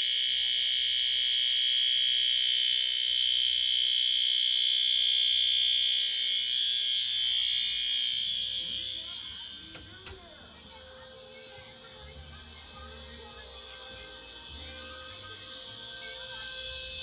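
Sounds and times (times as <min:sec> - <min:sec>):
fire alarm continuous tone: 0:00.0 - 0:17.0
alarm switch click: 0:08.2 - 0:10.4.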